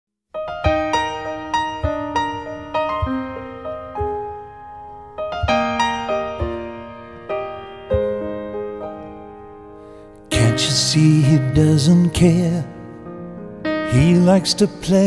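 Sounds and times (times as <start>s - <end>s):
slow solo piano chords: 0.4s - 15.0s.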